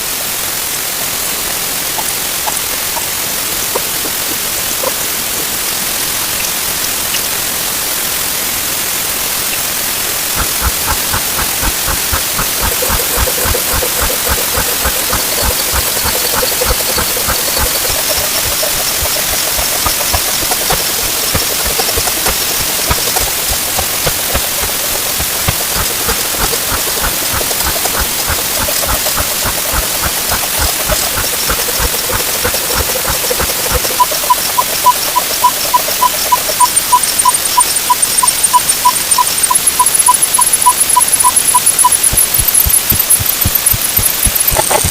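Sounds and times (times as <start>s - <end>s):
dense hiss of ticks and beeps: 0.5s - 44.9s
rapid clicks: 10.2s - 44.9s
short repeating tones: 10.4s - 44.9s
short beeps: 33.4s - 44.9s.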